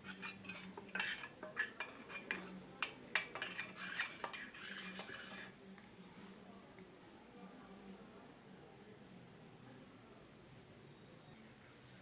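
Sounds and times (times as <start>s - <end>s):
spoon clinking against cookware: 0.0s - 5.5s.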